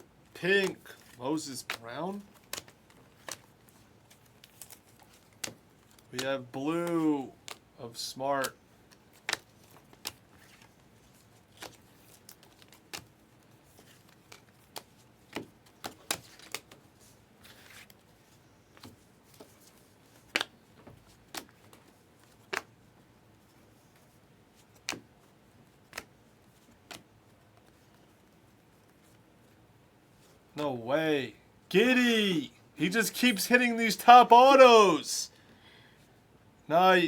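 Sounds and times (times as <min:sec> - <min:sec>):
card rustle: 0:00.6 - 0:06.3, 0:08.4 - 0:22.8
cards clicking and snapping: 0:02.4 - 0:03.5, 0:04.1 - 0:06.3, 0:24.8 - 0:25.1, 0:25.8 - 0:26.1.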